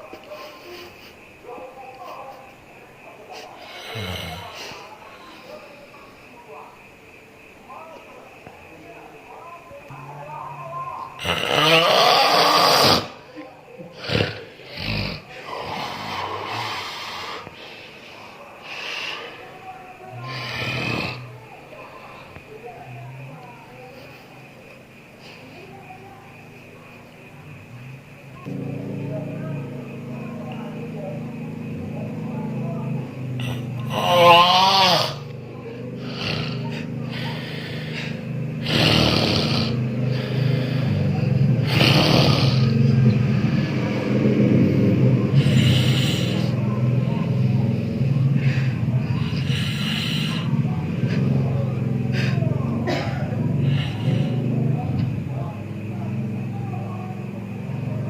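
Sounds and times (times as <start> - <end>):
harsh hissing breaths: 0.0 - 58.0
person snoring: 3.6 - 4.9, 11.2 - 13.2, 14.0 - 17.6, 20.1 - 21.4, 33.4 - 46.6, 47.2 - 52.5, 53.5 - 54.8.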